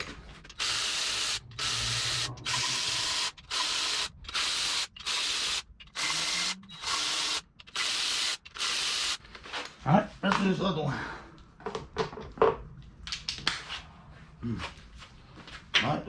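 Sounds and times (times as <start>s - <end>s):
power tool spinning bolts: 0.5s - 9.2s.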